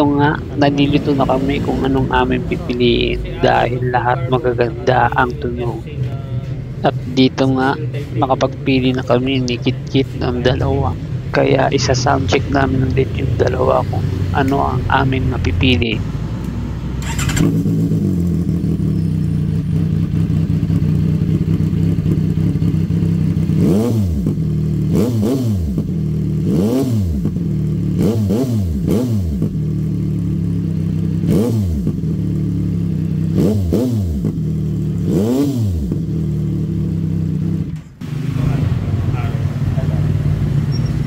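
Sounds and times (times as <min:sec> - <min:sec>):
motorcycle engine revving: 0:00.0 - 0:41.0
motorcycle engine idling: 0:17.0 - 0:26.5, 0:28.7 - 0:41.0.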